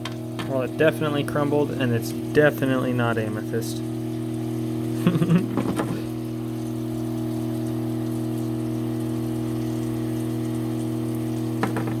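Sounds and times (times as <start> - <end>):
rock saw motor humming: 0.0 - 12.0.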